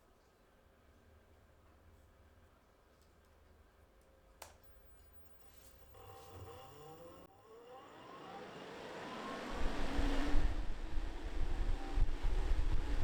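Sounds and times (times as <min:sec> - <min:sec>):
click: 0:04.0 - 0:04.9
electric fan whine: 0:05.0 - 0:13.0.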